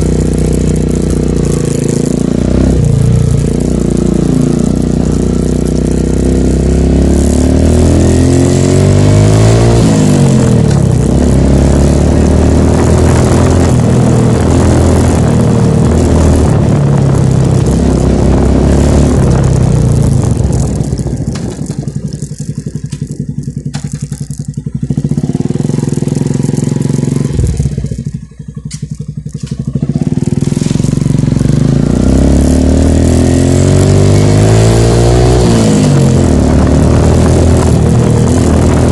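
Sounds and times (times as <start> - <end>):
motorcycle engine idling: 0.0 - 6.8, 19.0 - 32.2
motorcycle engine revving: 0.0 - 38.9.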